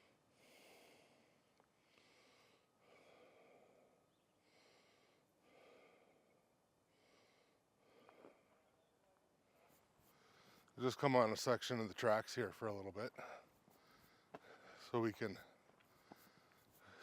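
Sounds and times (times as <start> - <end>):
person breathing: 0.0 - 8.7, 9.5 - 10.8, 13.1 - 14.9, 15.8 - 17.0.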